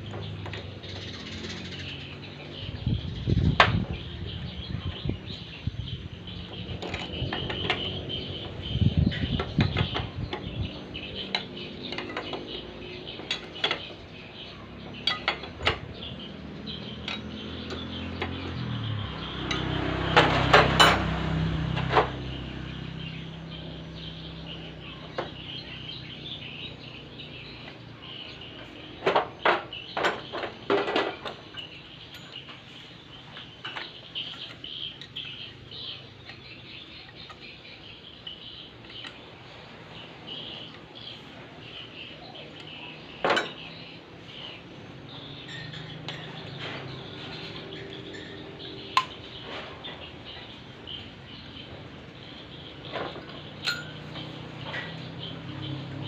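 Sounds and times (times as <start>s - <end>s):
metal tools and parts clinking: 6.4s - 21.1s, 28.6s - 37.6s, 41.6s - 51.1s, 52.8s - 55.3s.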